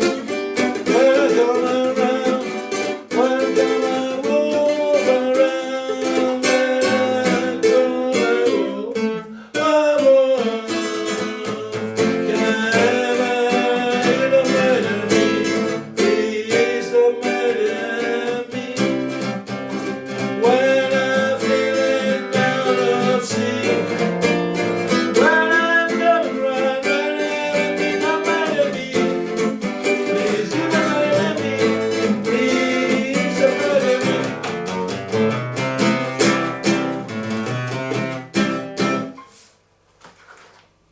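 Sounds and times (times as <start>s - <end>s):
person singing: 0.0s - 35.2s
plucked acoustic strings: 10.1s - 39.2s.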